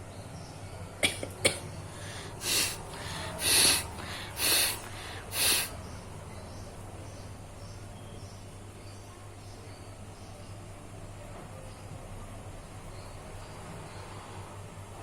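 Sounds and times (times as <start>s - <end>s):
person blowing through nose: 2.0s - 5.7s.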